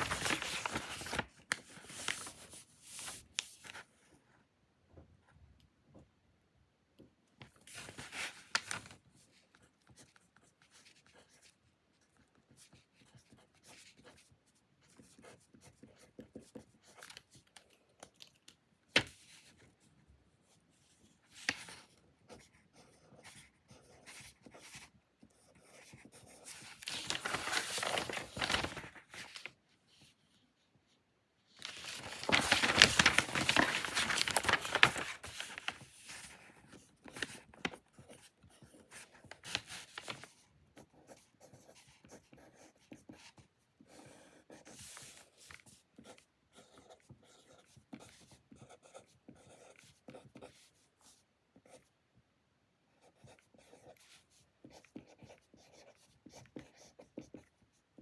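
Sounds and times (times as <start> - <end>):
paper being handled: 0.0 - 3.8, 7.7 - 9.0, 26.4 - 30.0, 31.5 - 37.8, 38.9 - 40.3
paper rustling and crinkling: 0.0 - 3.8, 7.5 - 9.3, 26.4 - 30.0, 31.5 - 37.8, 38.9 - 40.3.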